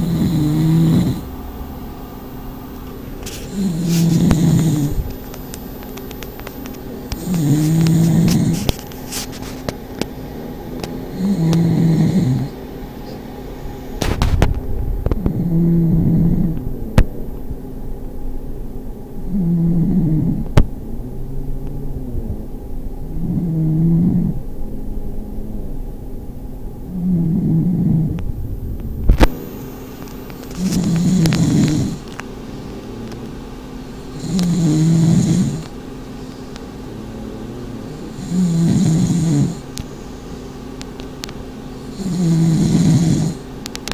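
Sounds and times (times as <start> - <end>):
dog snoring: 0.0 - 6.4, 7.1 - 9.7, 10.6 - 13.2, 15.1 - 17.1, 19.2 - 24.4, 26.9 - 32.2, 34.1 - 39.9, 41.8 - 43.5.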